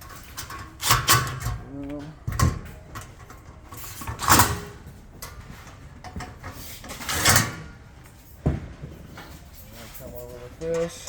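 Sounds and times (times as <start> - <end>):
metal parts scraping and knocking: 0.0 - 1.6, 2.3 - 7.7.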